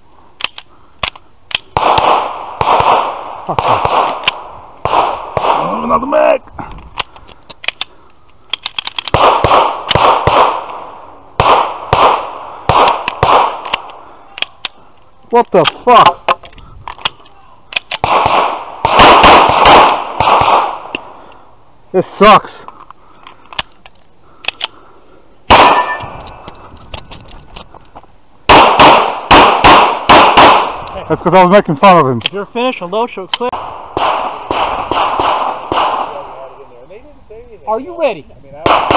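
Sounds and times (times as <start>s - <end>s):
small sharp clicks: 0.4s - 1.7s, 22.7s - 24.8s
pistol shots echoing: 1.6s - 5.9s, 9.1s - 14.6s, 17.9s - 21.1s, 25.5s - 26.1s, 28.5s - 30.8s, 33.5s - 36.5s, 38.6s - 38.9s
metallic ringing: 25.6s - 26.2s.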